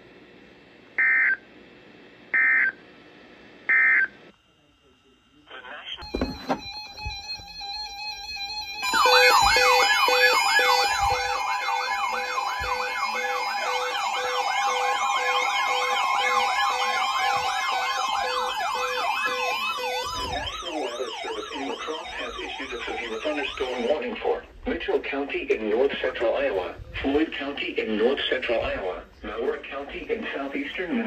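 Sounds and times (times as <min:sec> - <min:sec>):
electronic siren yelping: 0:01.0 - 0:01.4, 0:02.4 - 0:02.8, 0:03.7 - 0:04.1, 0:05.9 - 0:24.4.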